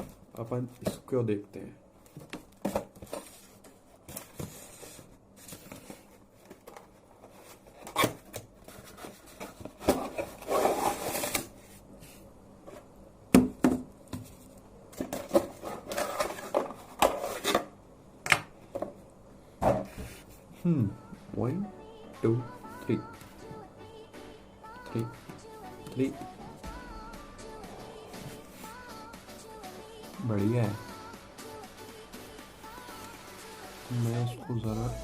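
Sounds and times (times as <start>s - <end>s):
rubbing and rustling: 2.1s - 12.8s, 14.2s - 17.6s.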